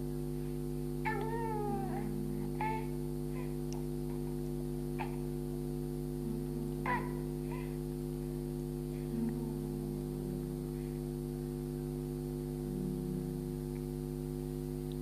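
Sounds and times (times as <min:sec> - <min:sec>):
electrical hum: 0:00.0 - 0:15.0
faint low sounds: 0:06.1 - 0:07.5, 0:08.2 - 0:14.0.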